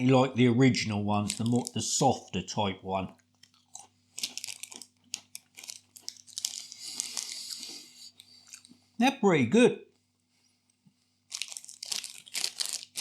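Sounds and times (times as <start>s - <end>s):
plastic snack packet crinkling: 1.1s - 2.2s, 3.1s - 8.8s, 11.2s - 13.0s.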